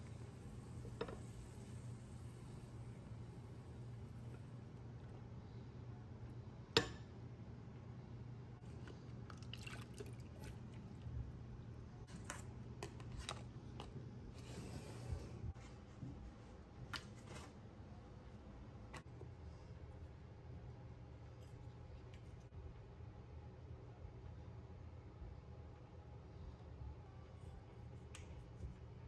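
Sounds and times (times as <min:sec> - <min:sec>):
low steady hum: 0:00.0 - 0:29.0
liquid dripping or pouring: 0:09.2 - 0:11.0.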